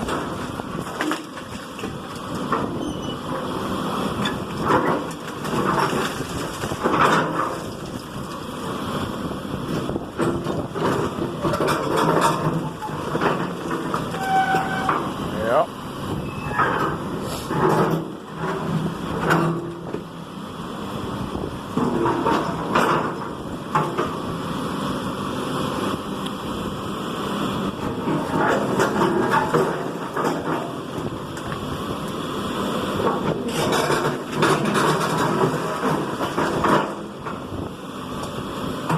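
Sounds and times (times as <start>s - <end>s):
wood and debris crunching: 0.0s - 2.5s, 4.2s - 8.7s
demolition machine engine running: 0.0s - 38.9s
brief high squeal: 14.2s - 14.9s, 16.2s - 16.6s.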